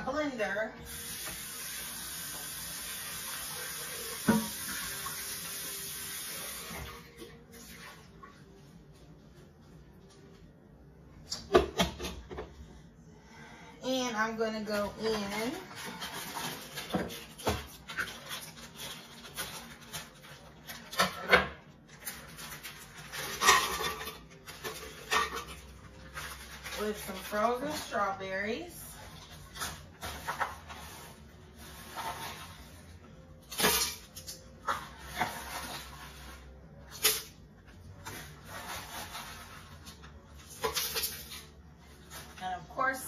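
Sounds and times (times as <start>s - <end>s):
tap water running: 0.8s - 8.4s
kitchen scrapes and knocks: 29.5s - 32.8s.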